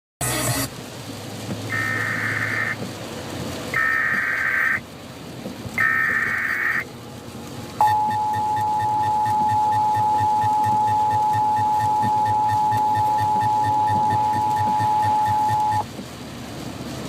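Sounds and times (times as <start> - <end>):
screechy digital data tones: 5.8 - 6.8
two-tone attention signal: 7.8 - 15.8.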